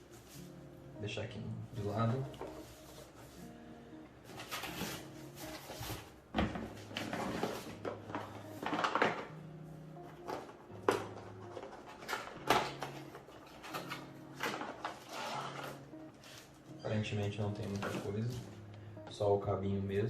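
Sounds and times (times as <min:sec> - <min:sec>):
faint background music: 0:00.0 - 0:20.0
cardboard packaging rustling: 0:04.3 - 0:09.3, 0:10.0 - 0:16.7.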